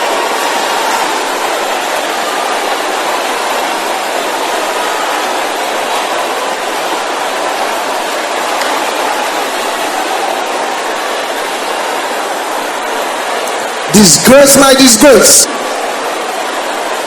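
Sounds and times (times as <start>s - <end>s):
congregation praying aloud: 13.7s - 15.8s.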